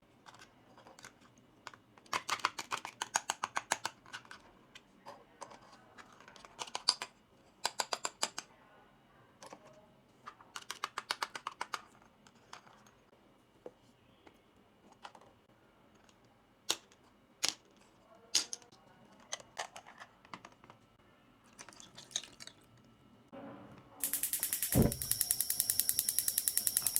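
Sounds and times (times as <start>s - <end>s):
plastic toy pieces clicking: 2.0s - 4.4s.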